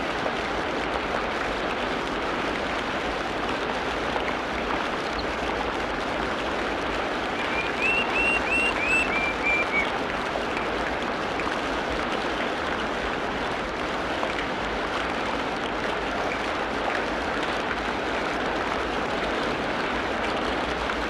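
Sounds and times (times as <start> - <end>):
water rushing: 0.1 - 21.0
bird chirps: 7.4 - 9.9.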